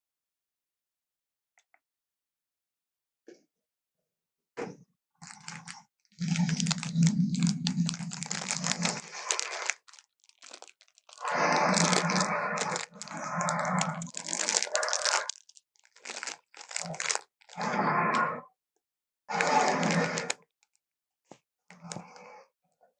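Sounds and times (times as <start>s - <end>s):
harsh rasping creature growls: 6.2s - 15.4s, 16.0s - 18.4s, 19.3s - 20.4s.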